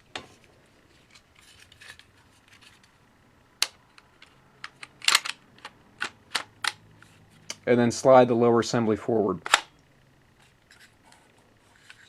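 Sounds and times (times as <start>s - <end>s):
rifle parts clicking: 3.6s - 6.8s.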